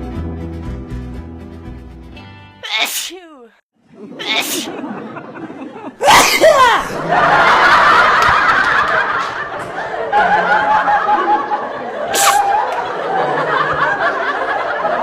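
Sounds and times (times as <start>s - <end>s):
people laughing and chattering: 3.8s - 15.0s
short hissing burst: 12.2s - 12.5s.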